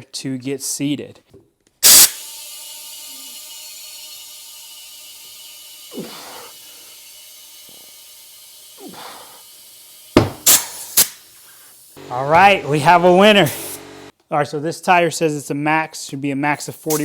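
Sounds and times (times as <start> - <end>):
compressed air hissing into tire: 1.8 - 14.0, 16.7 - 17.0
tire bead popping onto rim: 10.2 - 11.2.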